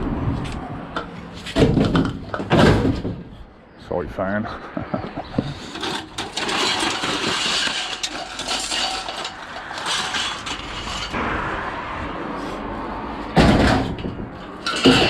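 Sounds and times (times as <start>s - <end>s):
scrap metal rattling and clinking: 5.5s - 11.2s, 13.4s - 15.0s
loud metal bang: 13.3s - 15.0s.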